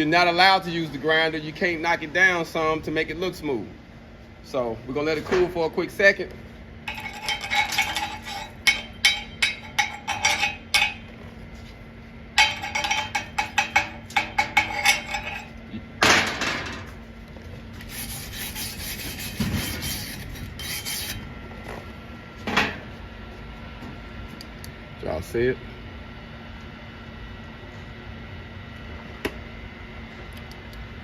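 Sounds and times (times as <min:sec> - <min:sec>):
metal scraping and clinking: 0:06.9 - 0:11.0, 0:12.4 - 0:15.6, 0:17.9 - 0:21.2.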